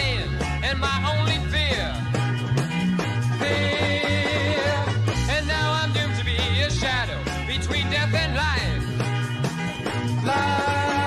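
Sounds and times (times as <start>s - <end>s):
heavy bass line: 0.0s - 11.0s.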